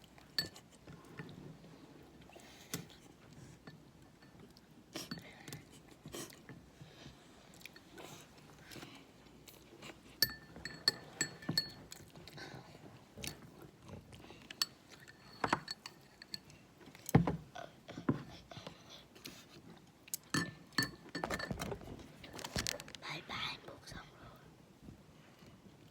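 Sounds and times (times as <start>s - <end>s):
utensils clinking on dish: 10.2s - 12.0s, 14.6s - 16.5s, 20.3s - 21.8s.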